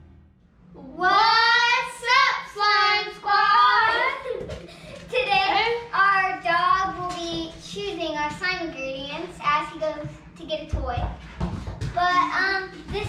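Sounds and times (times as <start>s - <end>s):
child singing: 0.8s - 4.4s.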